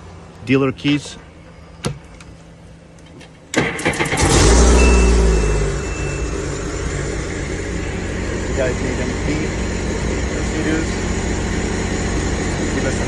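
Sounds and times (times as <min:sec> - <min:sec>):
watercraft engine starting and idling: 0:03.5 - 0:07.7
steady high beep: 0:04.7 - 0:07.0.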